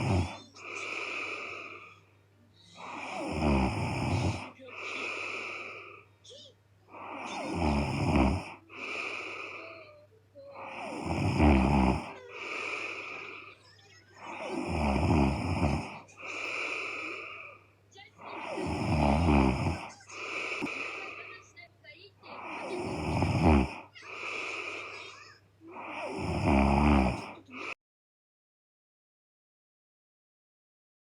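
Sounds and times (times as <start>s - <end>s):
woman snoring: 0.0s - 2.0s, 2.8s - 6.0s, 6.9s - 13.6s, 14.2s - 21.4s, 22.2s - 27.8s.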